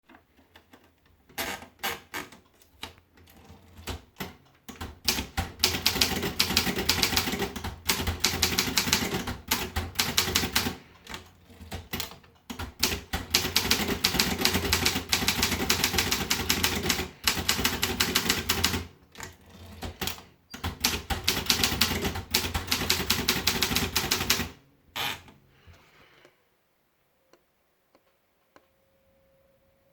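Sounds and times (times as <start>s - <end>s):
typewriter keys striking: 3.8s - 10.8s, 11.6s - 24.6s.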